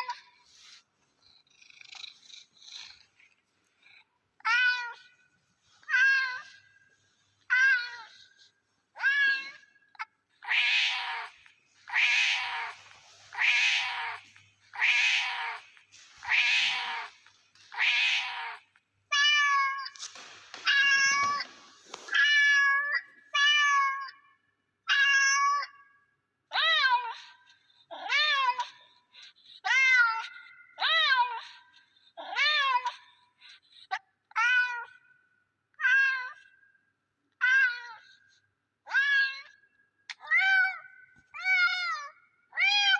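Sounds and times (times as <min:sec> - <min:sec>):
cat meowing: 0:07.5 - 0:24.2.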